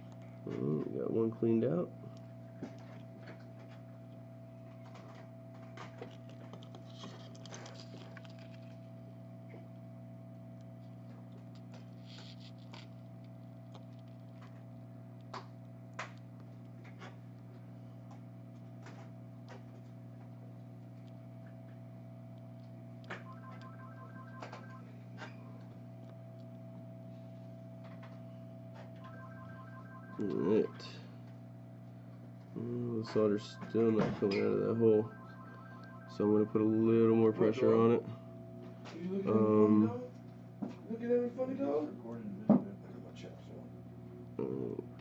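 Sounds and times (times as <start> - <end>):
low electrical hum: 0.0 - 45.0
faint clicks and scratches: 2.1 - 9.0, 10.6 - 21.8.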